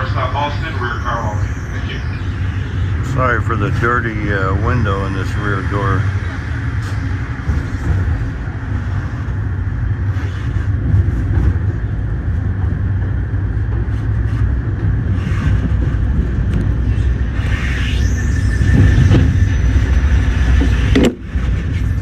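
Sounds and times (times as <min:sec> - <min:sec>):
brief squeal: 0:00.0 - 0:07.1, 0:16.8 - 0:20.9
train wheels rumbling on track: 0:00.0 - 0:22.0.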